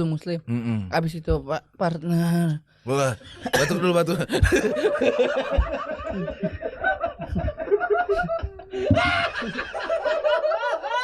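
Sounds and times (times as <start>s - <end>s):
people laughing: 3.3s - 11.0s.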